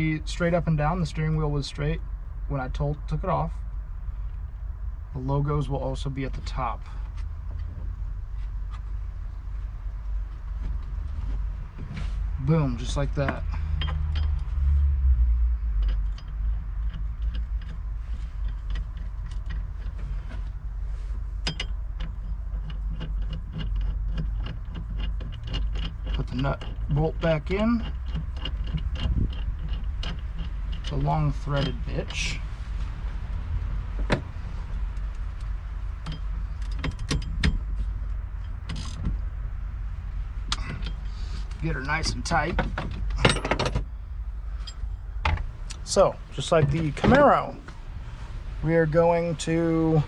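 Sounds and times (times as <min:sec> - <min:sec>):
low steady hum: 0:00.0 - 0:50.0
light metallic clicks and clinks: 0:12.9 - 0:14.6, 0:40.5 - 0:43.8.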